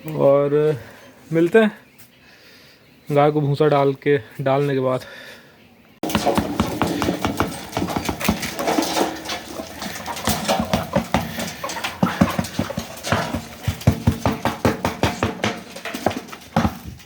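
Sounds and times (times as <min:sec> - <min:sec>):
chicken calls: 0:05.5 - 0:16.4
chickens pecking: 0:06.0 - 0:17.0.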